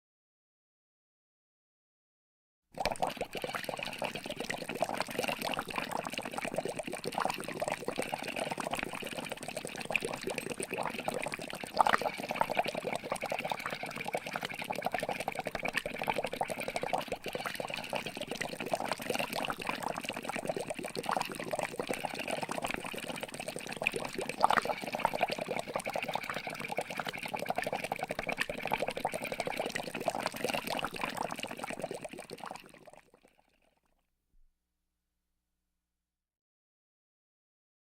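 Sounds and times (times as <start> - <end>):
water bubbling: 2.8 - 33.0.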